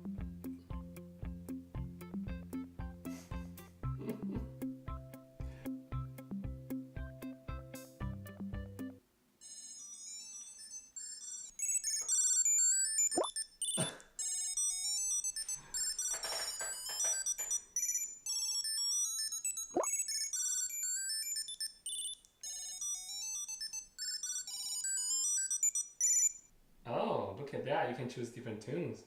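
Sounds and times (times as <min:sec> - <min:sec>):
high-pitched electronic ring melodies: 0:09.4 - 0:26.5.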